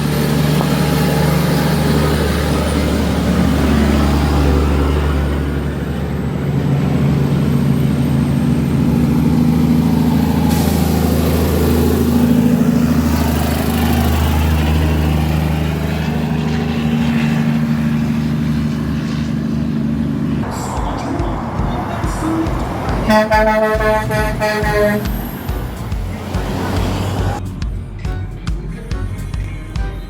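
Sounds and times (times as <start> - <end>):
heavy truck engine running: 0.0 - 30.0.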